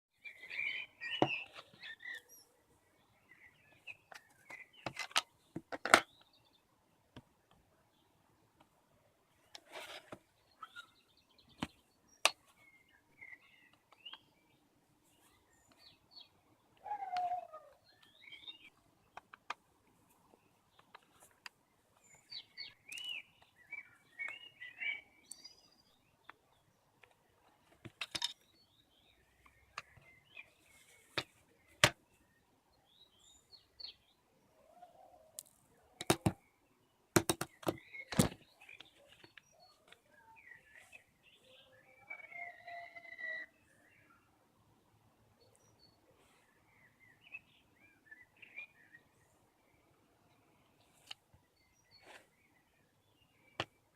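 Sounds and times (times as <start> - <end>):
birds chirping: 0.2 - 6.7, 9.2 - 44.4, 45.3 - 53.9
small tools clicking and knocking: 27.7 - 28.5.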